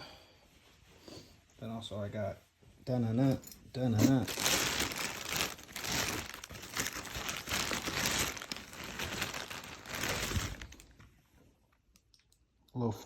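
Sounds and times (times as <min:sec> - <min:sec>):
packaging crinkling and rustling: 0:03.8 - 0:11.8.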